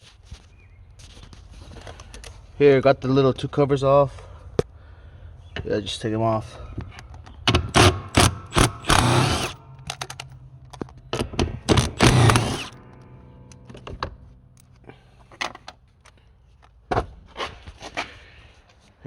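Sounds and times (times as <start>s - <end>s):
hand tools clanking and rattling: 7.6s - 15.8s
tool clicks: 7.7s - 10.9s, 11.7s - 14.8s.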